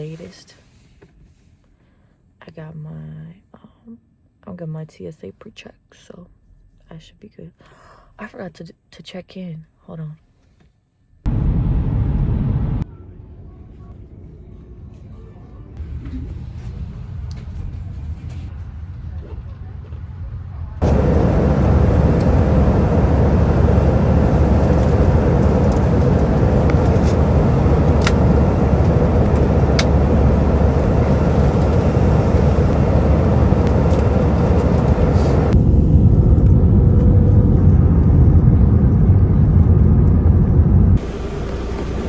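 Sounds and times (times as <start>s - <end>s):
vehicle running rumble: 11.3s - 12.9s, 15.8s - 42.0s
faint steady hum: 20.5s - 42.0s.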